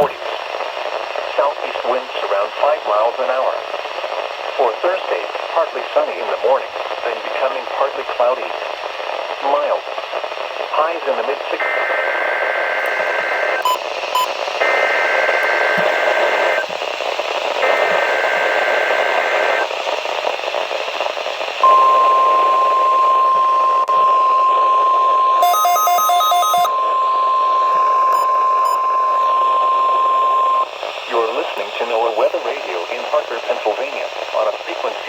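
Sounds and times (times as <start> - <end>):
radio static hiss: 0.0 - 35.0
rapid beeps: 11.6 - 16.7, 21.6 - 30.7.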